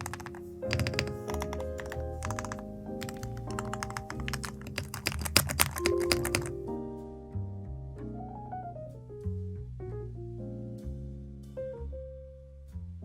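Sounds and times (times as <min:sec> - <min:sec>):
mechanical keyboard typing: 0:00.0 - 0:06.5
background music: 0:00.0 - 0:11.6.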